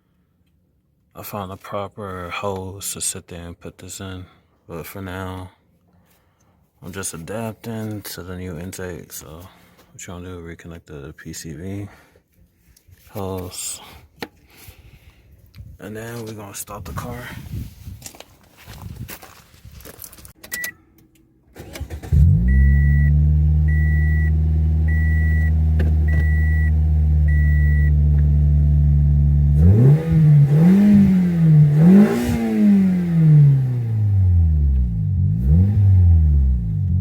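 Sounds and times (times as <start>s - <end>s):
car engine starting and idling: 20.4s - 37.0s
car warning chime beeps: 20.5s - 20.8s, 22.2s - 28.0s
engine revving: 21.6s - 37.0s.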